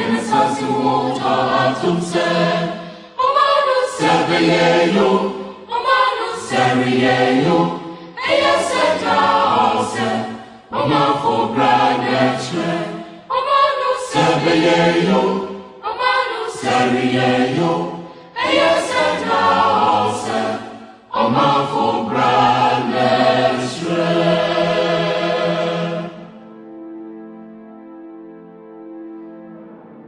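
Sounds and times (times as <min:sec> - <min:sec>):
choir singing: 0:00.0 - 0:26.8.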